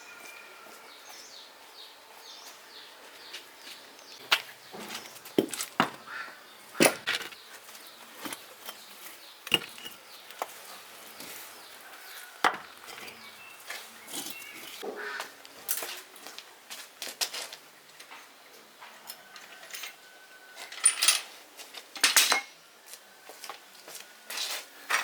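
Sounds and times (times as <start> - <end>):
hand tools clinking on metal: 8.2 - 10.4, 12.4 - 14.8, 20.6 - 21.3.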